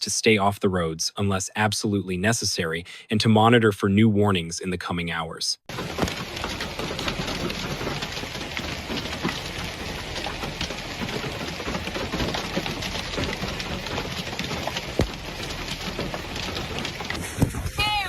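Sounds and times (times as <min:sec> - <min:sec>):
hail pelting hard surfaces: 0:05.7 - 0:18.0.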